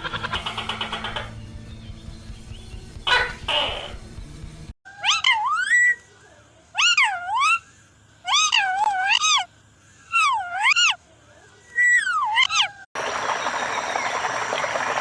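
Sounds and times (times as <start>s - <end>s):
low background hum: 13.0s - 15.0s.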